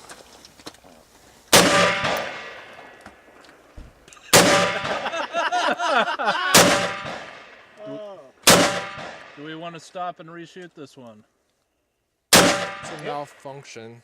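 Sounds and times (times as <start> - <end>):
rifle shots: 1.5 - 3.0, 4.3 - 5.2, 6.5 - 7.8, 8.4 - 9.5, 12.3 - 13.4
steel target ringing: 1.6 - 2.6, 12.4 - 13.4.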